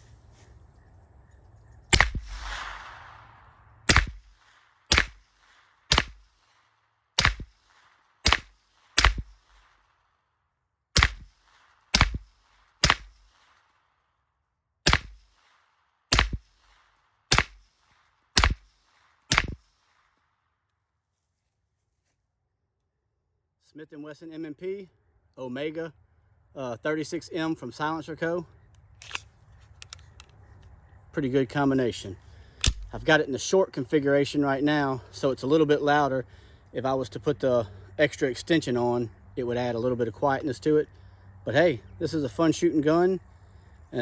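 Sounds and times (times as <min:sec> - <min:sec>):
suppressed pistol shots: 0:01.9 - 0:06.6, 0:07.2 - 0:09.9, 0:11.0 - 0:13.7, 0:14.8 - 0:17.8, 0:18.4 - 0:19.9, 0:32.6 - 0:33.0.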